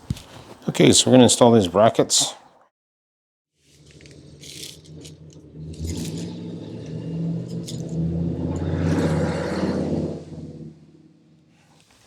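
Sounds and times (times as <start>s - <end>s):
engine humming: 3.6s - 12.0s.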